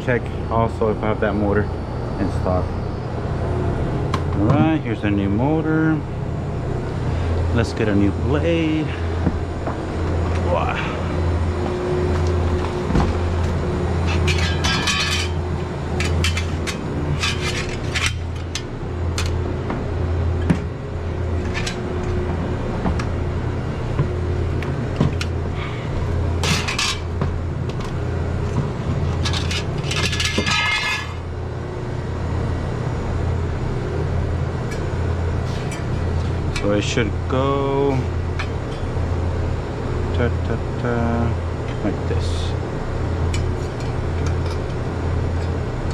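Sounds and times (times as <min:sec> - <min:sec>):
low machine hum: 0:00.0 - 0:45.9
metal parts clinking and scraping: 0:13.3 - 0:19.4, 0:21.4 - 0:21.8, 0:26.0 - 0:28.0, 0:28.9 - 0:31.3, 0:34.7 - 0:36.7, 0:43.4 - 0:45.6.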